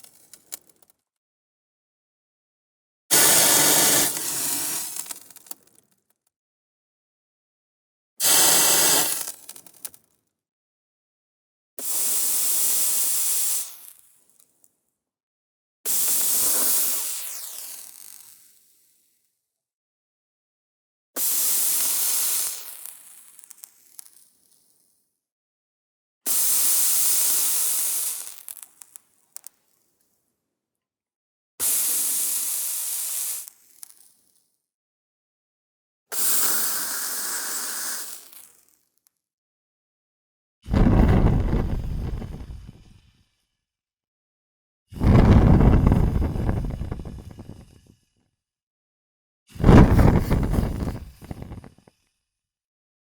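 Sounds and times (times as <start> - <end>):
hissing fire bursts: 40.7 - 42.9, 45.0 - 47.7, 49.6 - 51.7.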